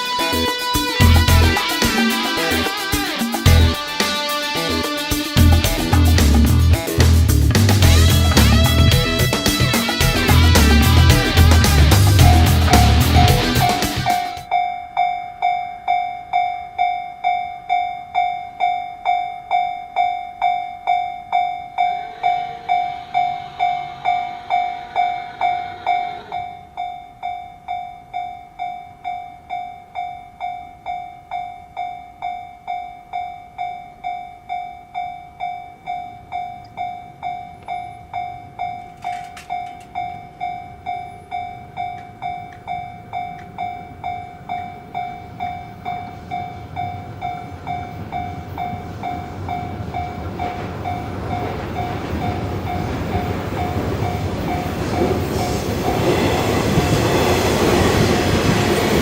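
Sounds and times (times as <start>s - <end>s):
level crossing bell clanging: 7.8s - 55.2s
low rumble: 10.1s - 13.8s.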